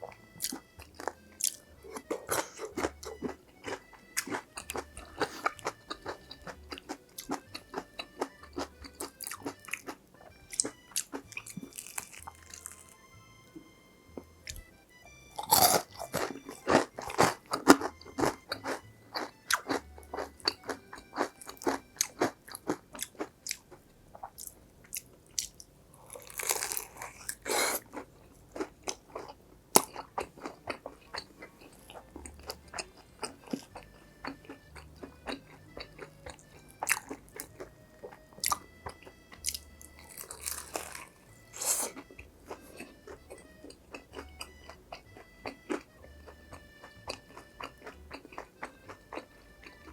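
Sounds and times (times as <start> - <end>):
chewing crispy fried food: 0.0 - 13.4, 14.1 - 49.9.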